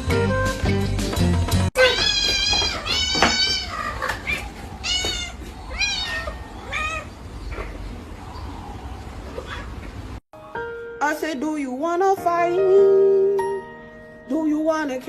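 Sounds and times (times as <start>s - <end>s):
cat meowing: 1.8s - 7.7s.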